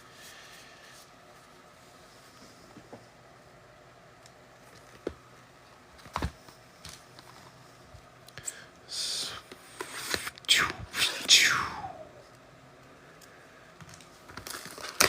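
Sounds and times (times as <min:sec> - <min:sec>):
packaging rustle: 0:13.9 - 0:15.0.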